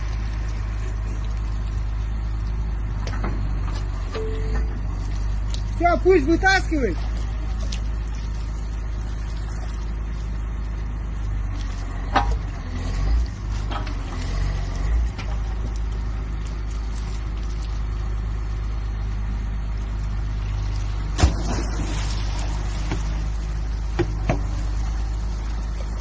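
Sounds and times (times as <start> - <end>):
heavy machinery engine droning: 0.0 - 26.0.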